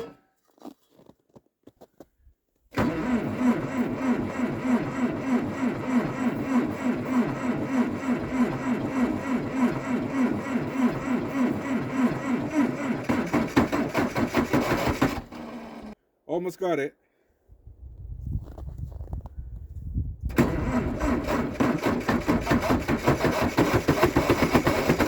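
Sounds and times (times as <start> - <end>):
diesel engine cranking: 2.7 - 16.0, 20.3 - 25.0.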